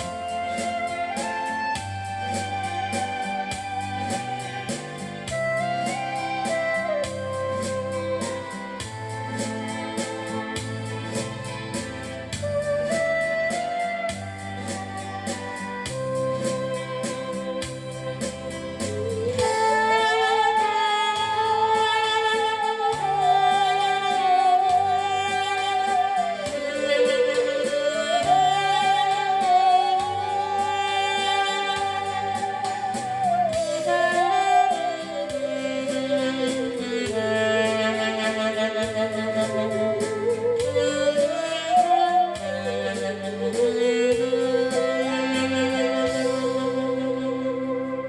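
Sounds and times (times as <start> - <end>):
musical saw melody: 0.0 - 48.0.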